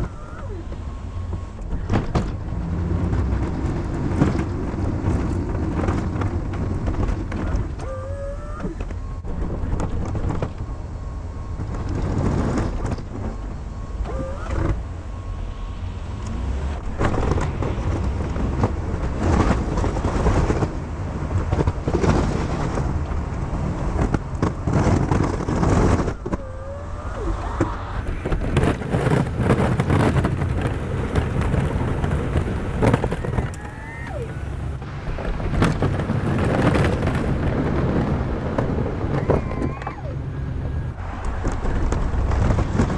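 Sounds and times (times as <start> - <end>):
snow plow clunking and scraping: 0.0 - 42.9
truck engine rumbling: 0.0 - 42.9.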